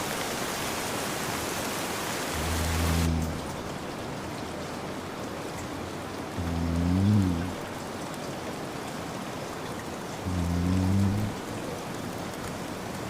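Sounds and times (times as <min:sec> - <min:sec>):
steady rain hiss: 0:00.0 - 0:13.0
man snoring: 0:02.3 - 0:03.6, 0:06.4 - 0:07.6, 0:10.2 - 0:11.4.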